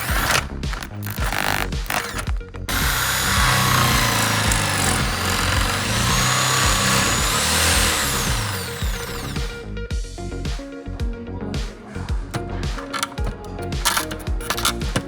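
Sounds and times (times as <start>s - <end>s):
power tool whining: 0.0s - 9.7s, 12.8s - 15.0s
music: 0.0s - 15.0s.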